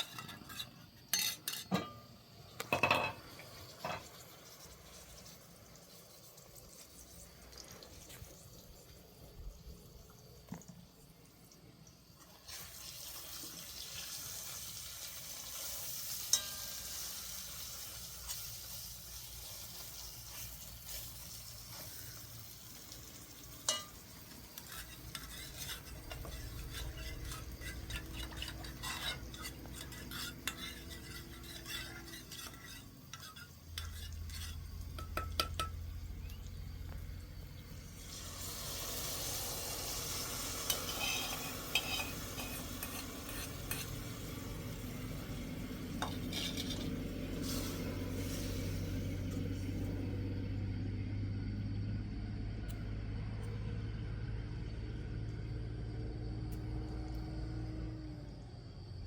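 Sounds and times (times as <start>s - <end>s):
utensil scraping a pan: 0.0s - 2.1s, 19.4s - 22.3s, 23.6s - 35.8s, 38.7s - 49.1s
food sizzling in a pan: 0.0s - 50.2s.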